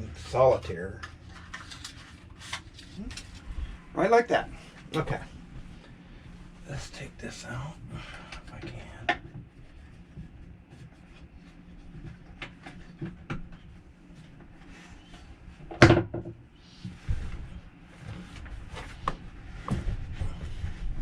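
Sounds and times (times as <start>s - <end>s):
furniture knocks and clunks: 15.7s - 16.4s, 19.6s - 21.0s.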